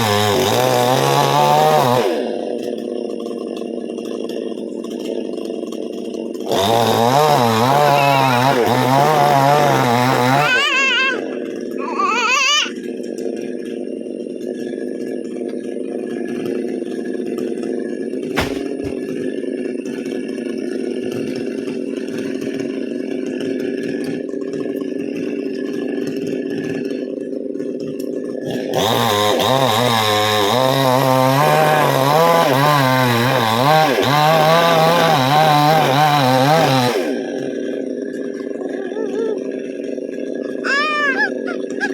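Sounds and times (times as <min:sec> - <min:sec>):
chainsaw running and cutting: 0:00.0 - 0:41.9
sharp knock: 0:18.4 - 0:18.9.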